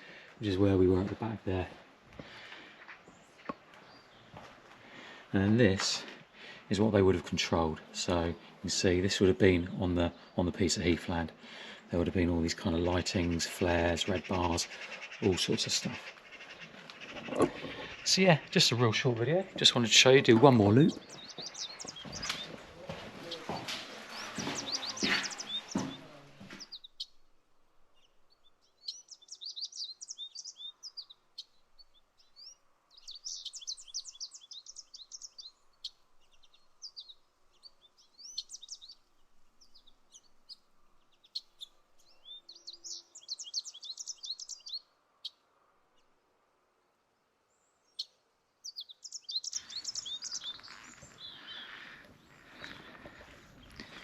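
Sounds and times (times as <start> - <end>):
songbird chirping and trilling: 6.7 - 46.2, 47.5 - 54.0
rustling with knocks: 16.6 - 26.8.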